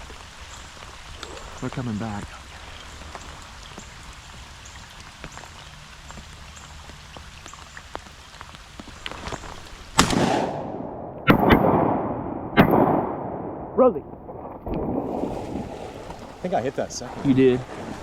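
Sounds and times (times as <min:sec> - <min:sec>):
rain pattering: 0:00.0 - 0:11.8, 0:13.7 - 0:18.0
shotgun shots: 0:10.0 - 0:13.8.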